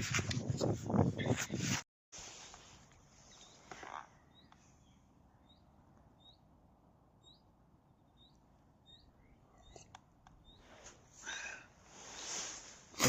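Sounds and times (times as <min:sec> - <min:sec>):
high bird chirps: 0:03.2 - 0:10.8.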